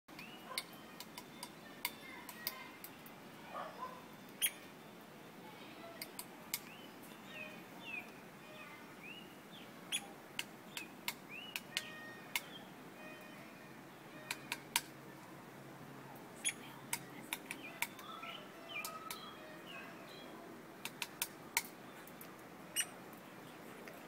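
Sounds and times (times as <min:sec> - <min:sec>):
chirping bird calls: 0:00.1 - 0:02.7, 0:03.5 - 0:14.8, 0:16.4 - 0:23.6
woodpecker tapping on wood: 0:00.2 - 0:02.6, 0:10.4 - 0:12.5, 0:14.2 - 0:14.9, 0:16.4 - 0:18.1, 0:20.8 - 0:22.9.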